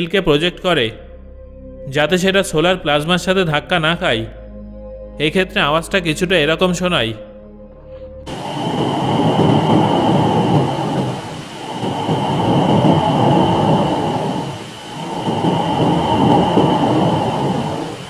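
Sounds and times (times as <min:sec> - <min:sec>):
dense rough noise: 0:08.1 - 0:18.0.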